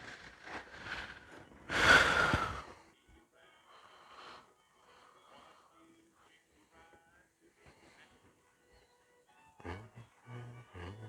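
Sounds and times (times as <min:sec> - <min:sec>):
loud breath: 0:00.0 - 0:02.8
soft breathy noises: 0:00.0 - 0:11.0.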